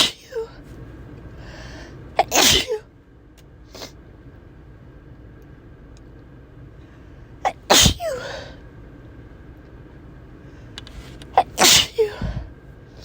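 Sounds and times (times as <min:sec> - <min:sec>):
person sneezing: 0:00.0 - 0:00.5, 0:02.2 - 0:02.8, 0:07.5 - 0:08.5, 0:11.4 - 0:12.4
steady low hum: 0:00.0 - 0:13.0.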